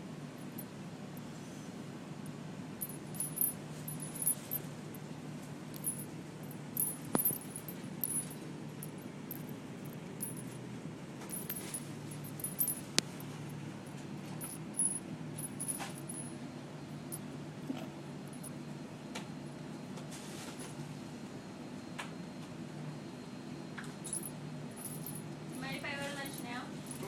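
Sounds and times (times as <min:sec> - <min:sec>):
steady low hum: 0:00.0 - 0:20.0, 0:24.0 - 0:27.0
light metallic jingling: 0:00.4 - 0:00.7, 0:02.8 - 0:18.6, 0:24.1 - 0:27.0.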